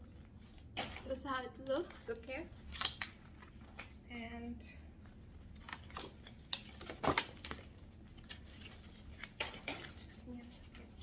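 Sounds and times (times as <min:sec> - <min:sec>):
packaging rustling and crinkling: 0:05.4 - 0:11.0.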